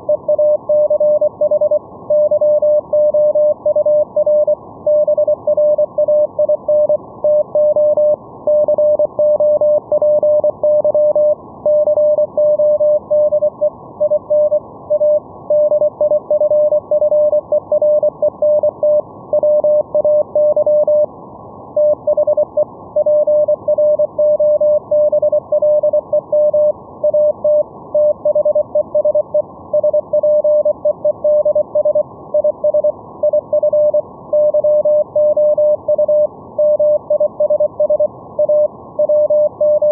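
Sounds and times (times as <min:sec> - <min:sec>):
morse code tone: 0:29.8 - 0:39.9.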